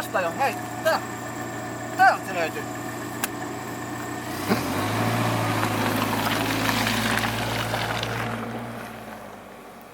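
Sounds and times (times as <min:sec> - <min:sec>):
vehicle engine running: 0:00.0 - 0:09.9
rushing noise of vehicle moving: 0:02.7 - 0:09.9.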